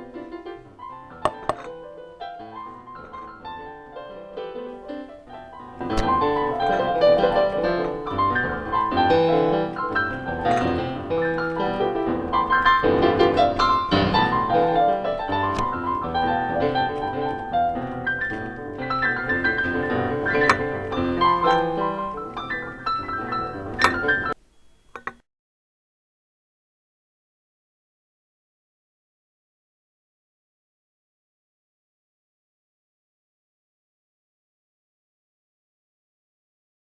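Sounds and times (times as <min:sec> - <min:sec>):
piano music: 0:00.0 - 0:24.4.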